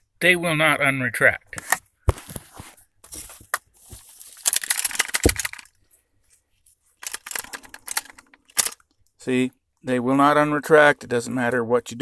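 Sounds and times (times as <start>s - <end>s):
seatbelt latch clicking and rattling: 4.5s - 5.7s, 7.0s - 8.9s.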